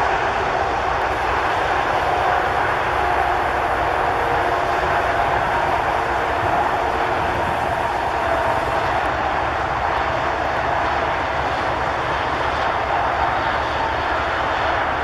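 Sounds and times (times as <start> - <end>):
aircraft engines running: 0.0 - 15.0
faint steady whine: 0.0 - 15.0.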